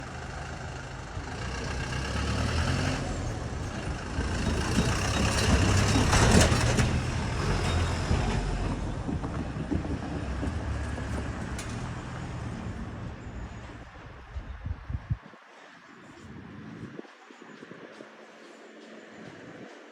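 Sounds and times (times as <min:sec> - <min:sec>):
passing train rumble: 0:00.0 - 0:19.9.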